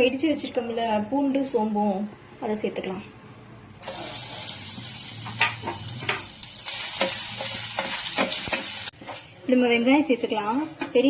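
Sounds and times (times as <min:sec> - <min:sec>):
food sizzling in hot oil: 0:03.8 - 0:09.2
stirring scrapes and knocks in pan: 0:05.2 - 0:09.3.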